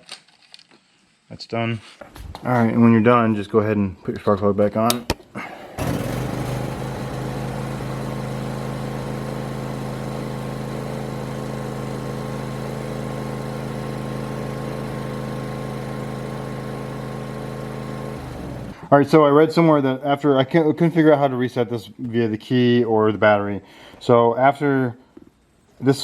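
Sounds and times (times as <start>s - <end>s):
mower engine running: 5.7s - 18.9s.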